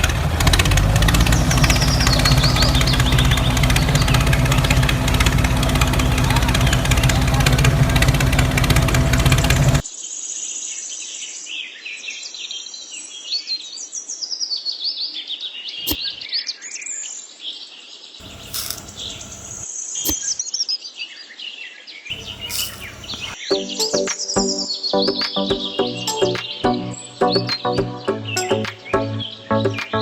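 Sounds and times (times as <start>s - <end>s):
small birds chirping: 1.1s - 9.8s, 17.6s - 20.6s, 22.1s - 30.0s
sharp clicks: 18.2s - 20.4s, 22.1s - 23.4s.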